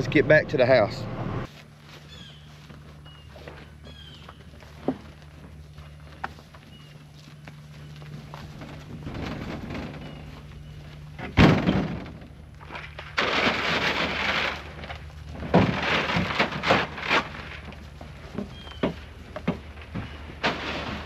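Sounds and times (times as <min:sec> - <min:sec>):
rustling and scraping: 0:01.4 - 0:21.0
knocks and clatter: 0:08.2 - 0:21.0.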